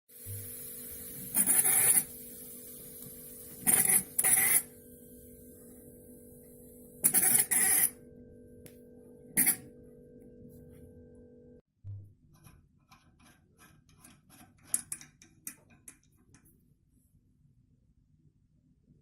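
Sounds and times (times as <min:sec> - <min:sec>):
steam valve squeaking: 0:01.2 - 0:02.1, 0:03.6 - 0:04.7.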